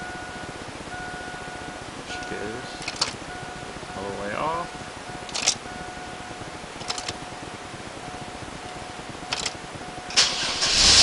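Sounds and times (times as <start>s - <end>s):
faint high hum: 0.0s - 11.0s
ignition key double clicks: 6.8s - 7.2s, 9.3s - 10.3s.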